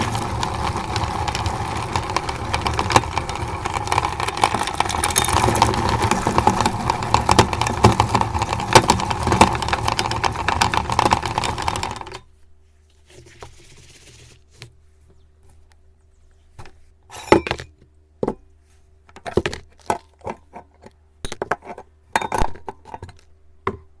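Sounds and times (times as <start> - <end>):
meat grinder crunching candy: 0.0 - 12.2
scattered clicks and knocks: 0.0 - 12.2.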